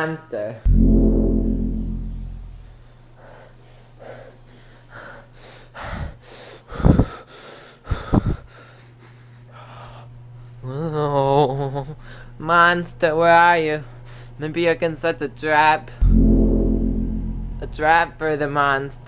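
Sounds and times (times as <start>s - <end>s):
deep tone: 0.7s - 2.9s, 16.0s - 17.9s
person gasping breaths: 3.3s - 10.1s
faint low hum: 16.0s - 18.2s.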